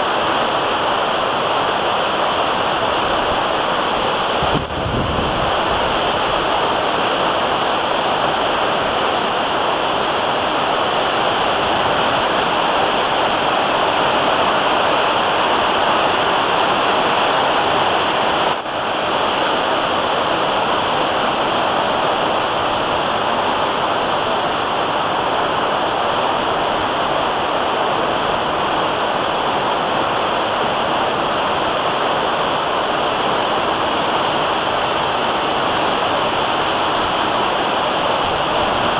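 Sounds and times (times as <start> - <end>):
rush of water in ship wake: 0.0 - 38.9.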